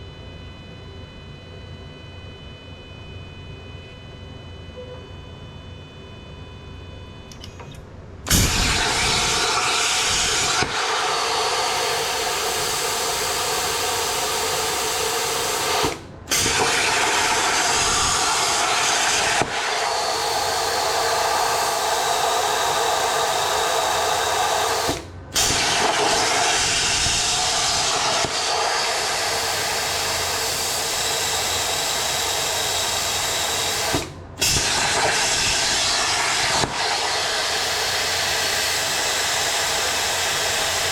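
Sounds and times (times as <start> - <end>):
plasma cutter arc hissing: 8.3 - 40.9.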